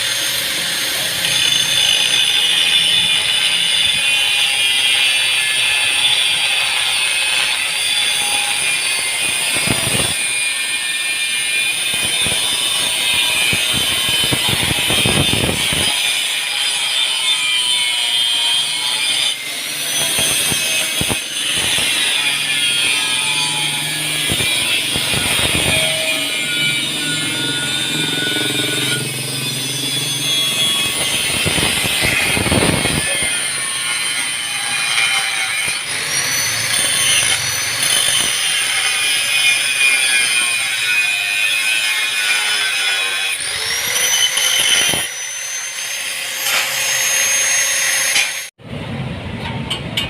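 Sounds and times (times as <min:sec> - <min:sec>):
power tool running with whine: 0:23.1 - 0:33.5.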